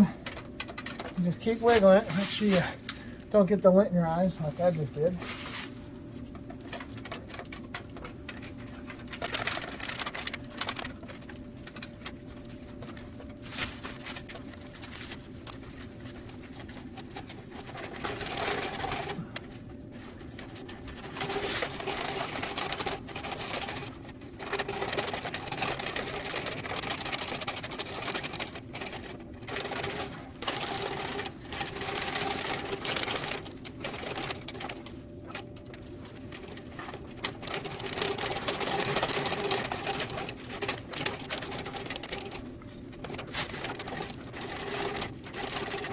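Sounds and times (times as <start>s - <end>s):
dryer humming: 0.0s - 24.8s.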